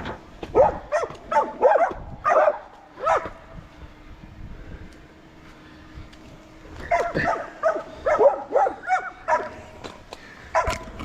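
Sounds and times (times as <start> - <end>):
dog barking: 0.5 - 3.4, 6.8 - 9.6, 10.5 - 10.8.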